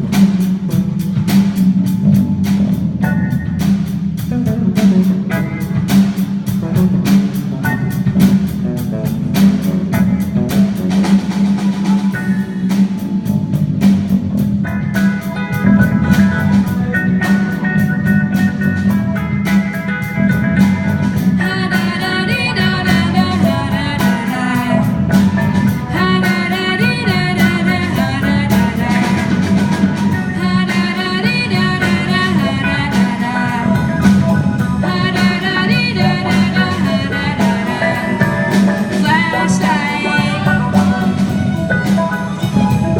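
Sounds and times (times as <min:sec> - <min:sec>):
drum kit: 0:00.0 - 0:42.9
guitar: 0:00.0 - 0:42.9
steady bass note: 0:00.0 - 0:42.9
person singing: 0:21.4 - 0:42.9.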